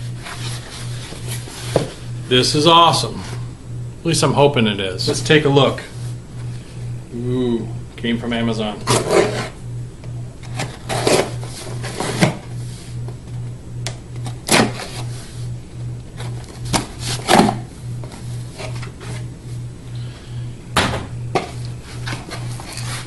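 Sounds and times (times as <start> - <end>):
cardboard package scraping and rustling: 0.0 - 2.1, 8.8 - 9.6, 10.4 - 13.0, 14.2 - 15.5, 16.1 - 19.3, 21.7 - 23.0
low pulsing hum: 0.0 - 23.0.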